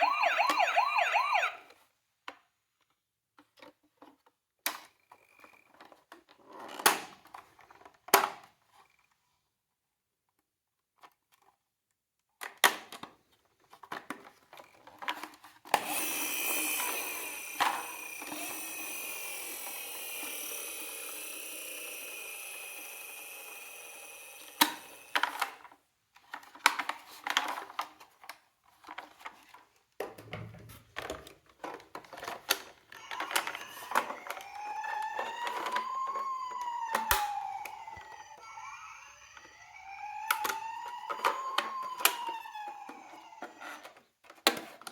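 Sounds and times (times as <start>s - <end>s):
toy siren wailing: 0.0s - 1.7s, 15.8s - 25.4s, 32.9s - 44.0s
toy cars clicking and clattering: 2.2s - 8.9s, 10.3s - 29.8s, 30.9s - 44.9s.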